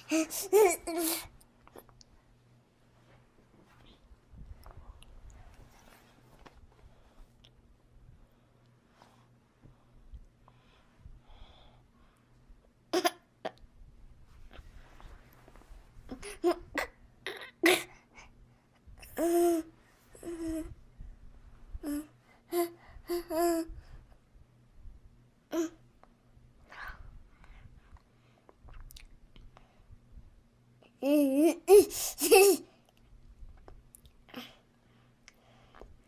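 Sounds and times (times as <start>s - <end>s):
person gasping: 31.7s - 32.6s.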